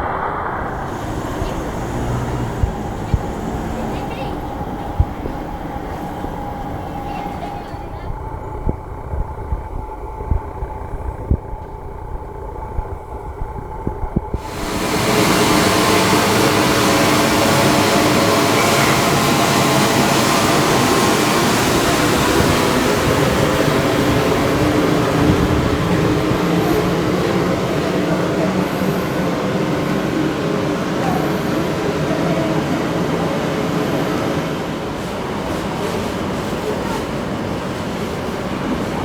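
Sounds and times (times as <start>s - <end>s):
train wheels rumbling on rails: 0.0s - 39.0s
electric motor drone: 0.8s - 4.0s, 14.4s - 26.9s.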